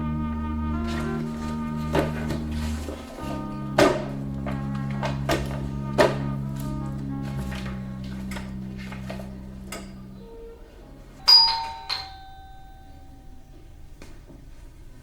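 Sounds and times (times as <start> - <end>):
doorbell ding dong chime: 11.2 - 13.9.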